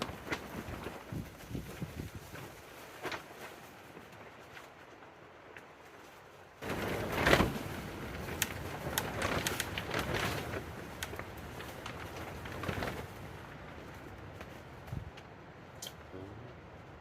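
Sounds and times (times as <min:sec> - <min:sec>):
strong wind gusting: 0:00.0 - 0:02.4
plastic covering rattling and snapping: 0:00.0 - 0:05.7, 0:06.6 - 0:14.1.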